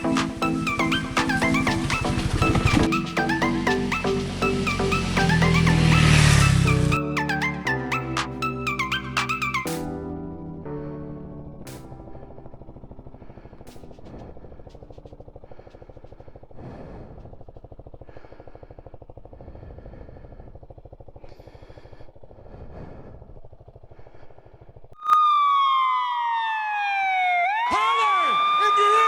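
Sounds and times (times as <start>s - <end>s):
loud wail sliding downward: 0.0s - 9.9s, 25.0s - 29.0s
motorcycle engine running: 14.0s - 24.9s.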